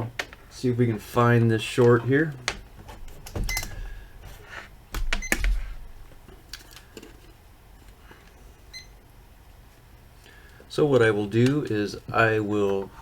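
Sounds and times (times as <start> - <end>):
multimeter beeps: 3.5 - 3.8, 5.2 - 5.5, 8.7 - 9.0.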